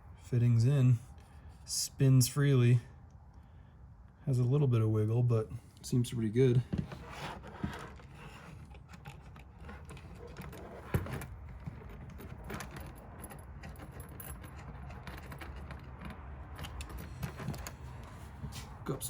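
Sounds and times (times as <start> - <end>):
metal parts and tools clinking: 7.2 - 18.2.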